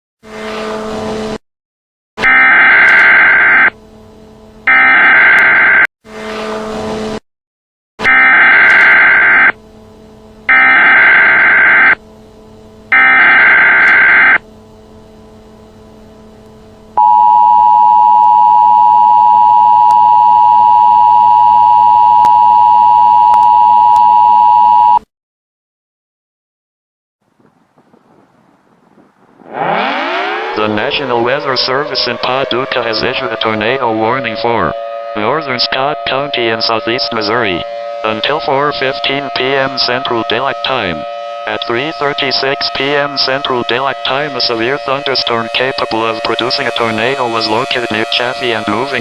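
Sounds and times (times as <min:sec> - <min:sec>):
two-tone attention signal: 0:12.9 - 0:14.4, 0:17.0 - 0:25.0.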